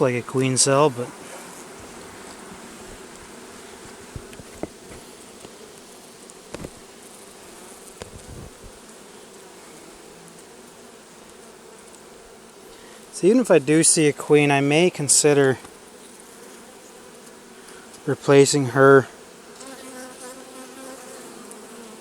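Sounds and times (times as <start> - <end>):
honey bees buzzing: 0.0 - 22.0.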